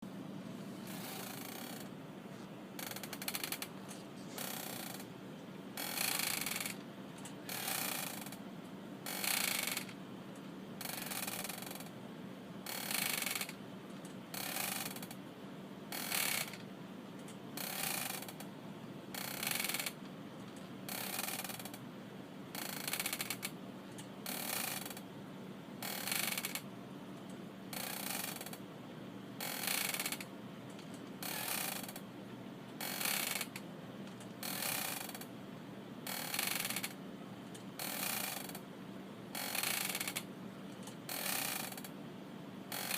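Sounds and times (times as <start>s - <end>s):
rocking chair creaking: 0.8s - 5.1s, 5.8s - 8.4s, 9.0s - 10.0s, 10.8s - 11.9s, 12.7s - 13.6s, 14.3s - 15.2s, 15.9s - 16.6s, 17.6s - 18.4s, 19.2s - 20.0s, 20.9s - 21.8s, 22.6s - 23.5s, 24.2s - 25.0s, 25.8s - 26.6s, 27.7s - 28.6s, 29.4s - 32.0s, 32.8s - 35.3s, 36.0s - 37.0s, 37.8s - 38.6s, 39.4s - 41.9s.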